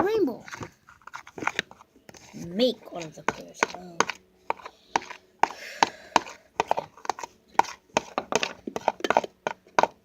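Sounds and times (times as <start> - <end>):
utensil clacking against a bowl: 2.8 - 10.0.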